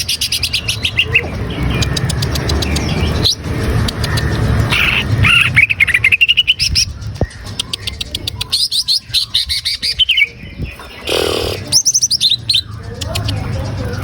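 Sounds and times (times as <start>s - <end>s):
bird singing rapid chirps: 0.0s - 14.0s.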